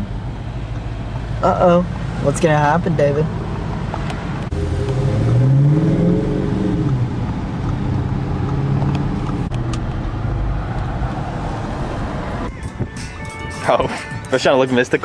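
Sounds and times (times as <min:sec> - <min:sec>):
car engine running: 0:00.0 - 0:12.5.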